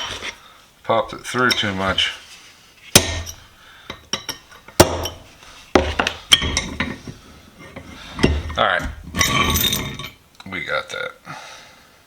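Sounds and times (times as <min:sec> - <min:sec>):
metallic clanks and clinks: 0:06.0 - 0:07.1, 0:07.7 - 0:10.2.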